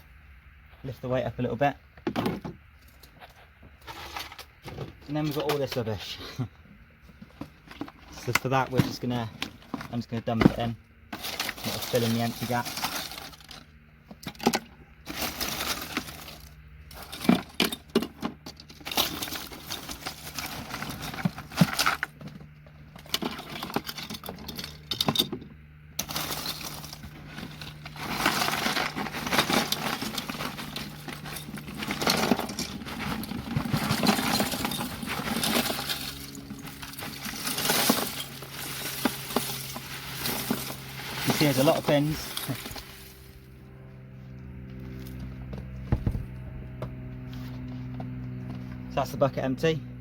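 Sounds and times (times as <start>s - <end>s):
metal pins clattering into tub: 11.1s - 43.2s.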